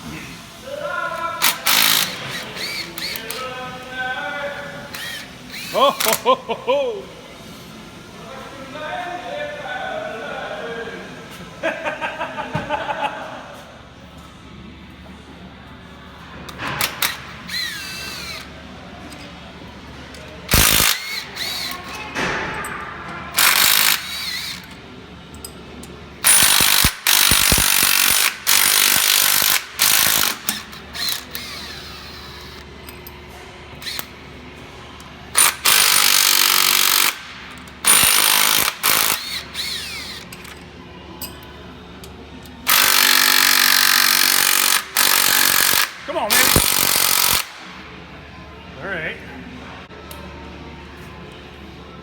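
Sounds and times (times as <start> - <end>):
power tool spinning bolts: 1.4 - 3.4, 4.9 - 6.2, 16.8 - 18.5, 20.5 - 22.0, 23.4 - 24.8, 26.2 - 32.6, 33.8 - 34.1, 35.4 - 40.6, 42.7 - 47.7.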